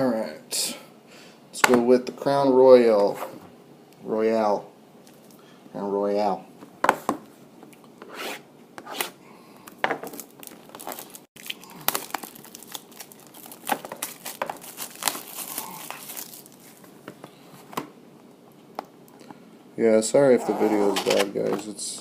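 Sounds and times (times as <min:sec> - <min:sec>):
plastic wrapping tearing and crinkling: 0:10.0 - 0:16.8, 0:20.6 - 0:21.4.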